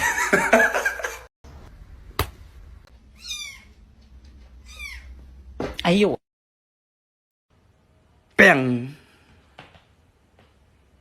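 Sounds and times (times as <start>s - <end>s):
cat meowing: 3.2s - 3.8s.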